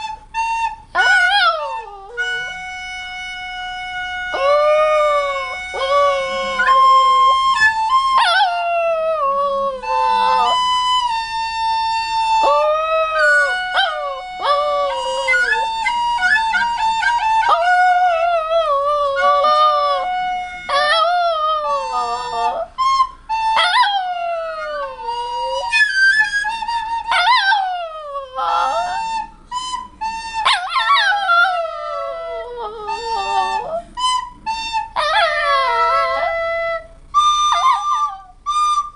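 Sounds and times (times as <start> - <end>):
flute playing: 0.0 - 38.9
dog howling: 1.0 - 3.0, 4.3 - 10.7, 12.2 - 22.8, 23.5 - 29.3, 30.4 - 33.9, 35.0 - 38.4.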